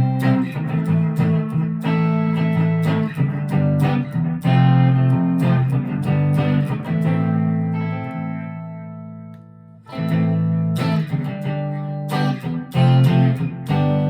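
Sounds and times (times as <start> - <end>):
electric guitar strumming chords: 0.0 - 14.0.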